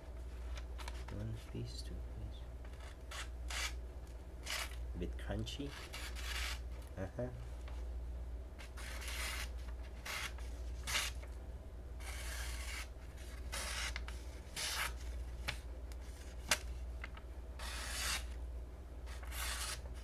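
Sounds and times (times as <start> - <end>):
knife slicing through paper: 19.1 - 20.0.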